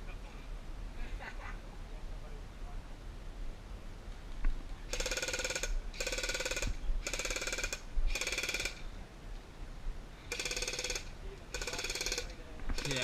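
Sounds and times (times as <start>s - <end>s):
airsoft gun firing bursts: 4.9s - 8.8s, 10.3s - 13.0s.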